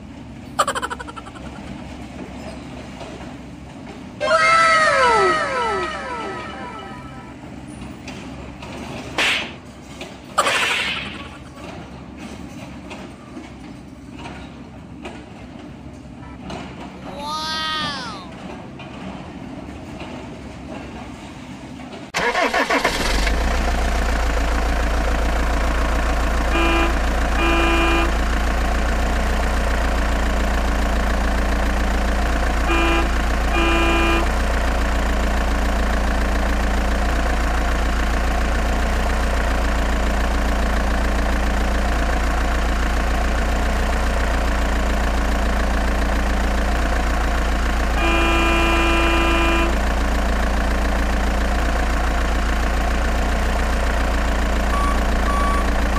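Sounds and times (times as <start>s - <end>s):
simulated engine idling: 0.0s - 3.6s, 22.2s - 55.9s
toy horn toots: 26.5s - 28.2s, 32.6s - 34.3s, 48.0s - 49.8s.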